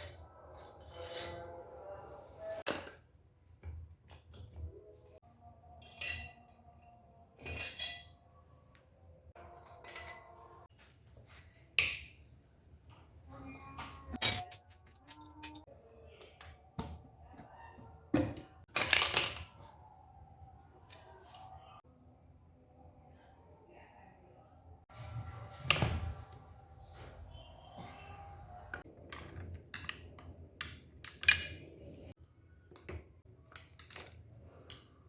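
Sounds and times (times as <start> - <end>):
metal tools clinking: 5.8 - 8.2, 9.4 - 10.6, 13.2 - 15.6.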